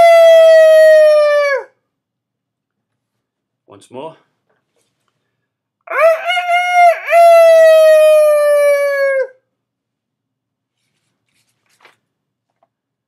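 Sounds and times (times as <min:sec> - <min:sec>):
person imitating rooster crowing: 0:00.0 - 0:01.8, 0:05.9 - 0:09.4.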